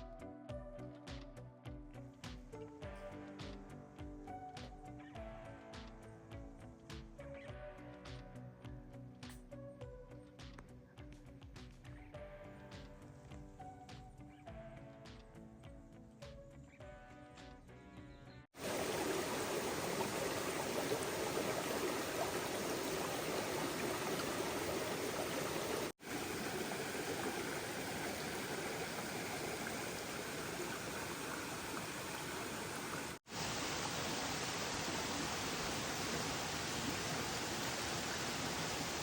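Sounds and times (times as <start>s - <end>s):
music: 0.0s - 18.5s
flowing stream water: 18.6s - 39.0s.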